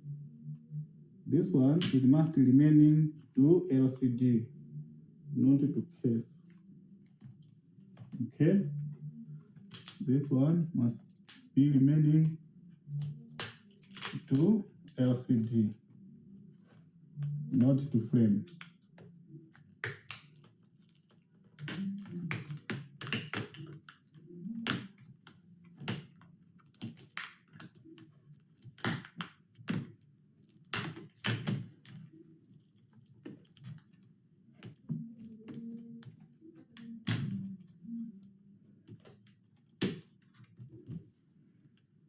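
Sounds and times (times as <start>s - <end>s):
clicks and taps on plastic: 18.5s - 41.1s.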